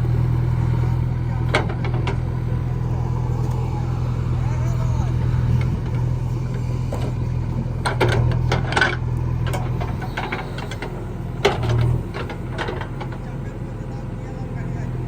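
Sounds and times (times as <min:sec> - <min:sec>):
diesel engine running: 0:00.0 - 0:15.0
knocks and clanks: 0:01.3 - 0:02.6, 0:05.1 - 0:13.4.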